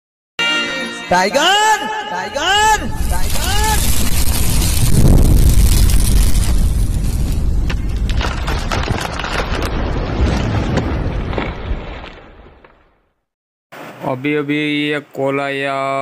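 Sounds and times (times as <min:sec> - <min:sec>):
deep rumbling explosion boom: 0:02.8 - 0:12.7.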